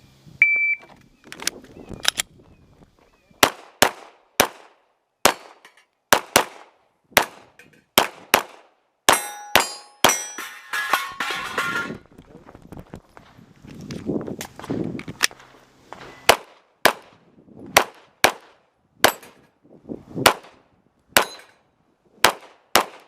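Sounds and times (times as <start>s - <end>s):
pistol shots: 3.4s - 10.2s, 16.3s - 19.4s, 22.2s - 23.0s
steel targets ringing: 9.1s - 12.0s, 21.2s - 21.6s.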